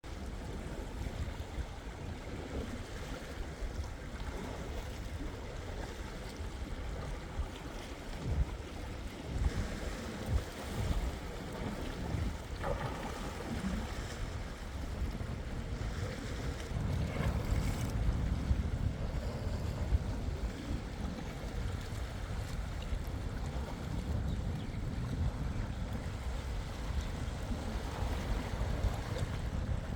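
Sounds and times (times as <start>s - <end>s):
sea waves: 0.0s - 29.9s
wind buffeting microphone: 0.0s - 29.9s.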